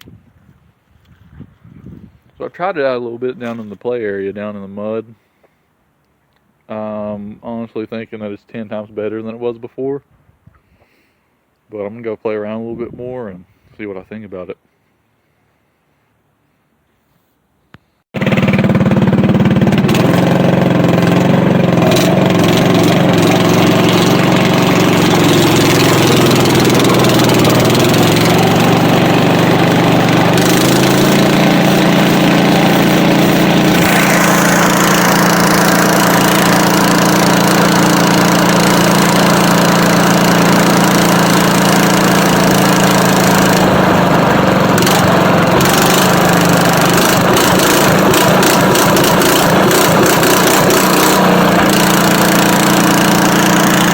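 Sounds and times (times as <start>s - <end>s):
small engine running loud: 18.2s - 53.9s.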